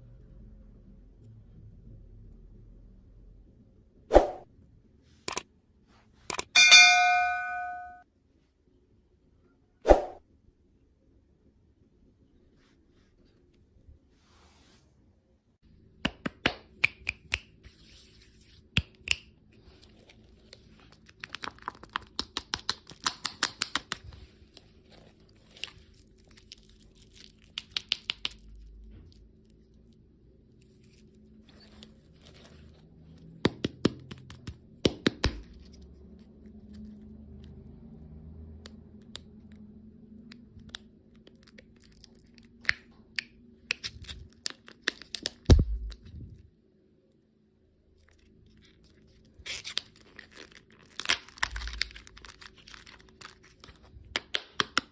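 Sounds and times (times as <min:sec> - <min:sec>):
plastic wrappers crinkling and tearing: 0:19.8 - 0:30.0, 0:40.5 - 0:42.8, 0:43.6 - 0:46.0, 0:48.0 - 0:54.3.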